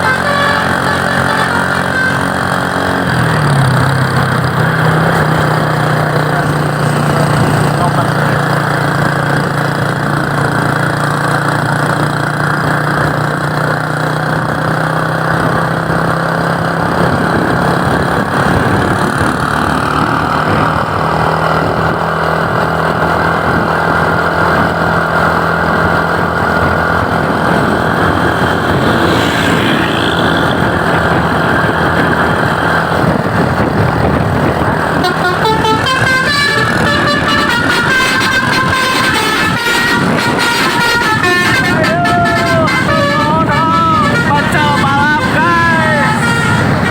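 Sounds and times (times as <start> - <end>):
musical bus horn: 0.0 - 3.1, 34.8 - 46.9
engine drone and road noise: 0.0 - 46.9.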